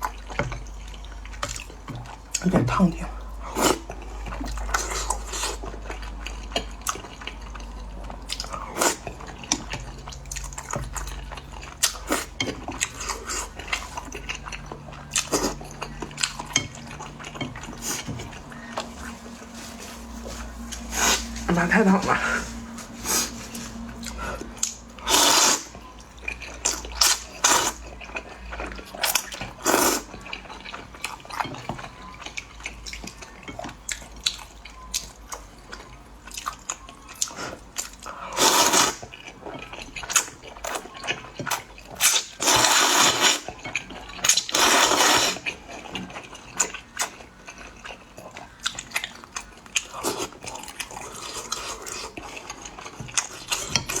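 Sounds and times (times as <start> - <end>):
slurping noodles: 17.6 - 25.8, 29.6 - 30.2, 38.3 - 39.0, 42.0 - 43.5, 44.3 - 45.6.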